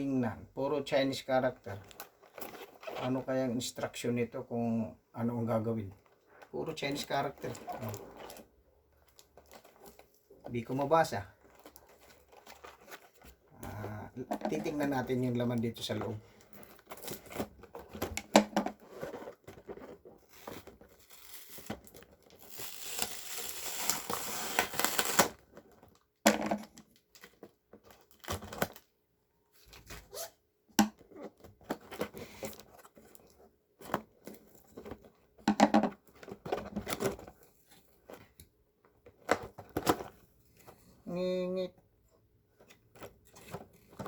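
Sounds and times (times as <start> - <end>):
packaging rustling and knocks: 11.4 - 22.5
package tearing: 20.3 - 25.4.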